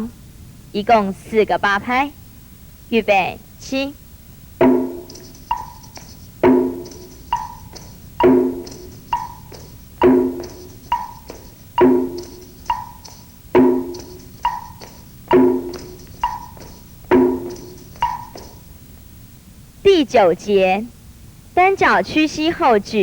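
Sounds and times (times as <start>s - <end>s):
faint high rattle: 4.6s - 18.8s
ringing percussion strokes: 4.6s - 18.8s.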